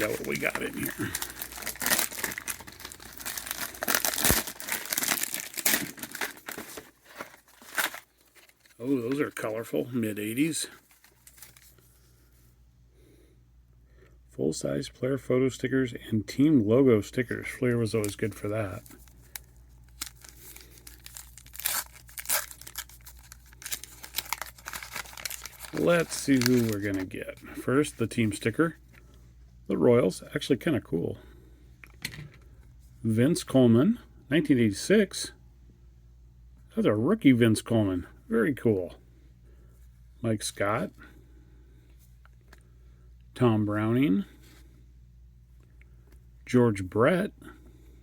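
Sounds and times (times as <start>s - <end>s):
wrapper crinkling and tearing: 0.0s - 9.6s, 10.7s - 11.9s, 18.0s - 27.2s.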